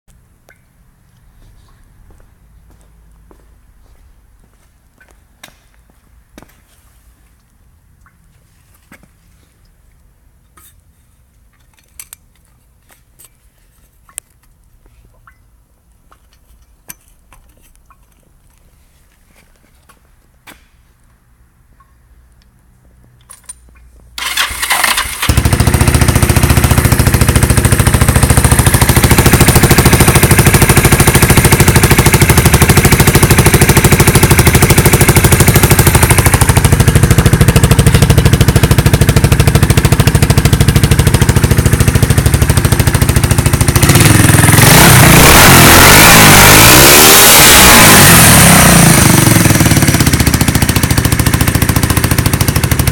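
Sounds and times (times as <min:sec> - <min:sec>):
motorcycle engine running loud: 0:24.8 - 0:52.9.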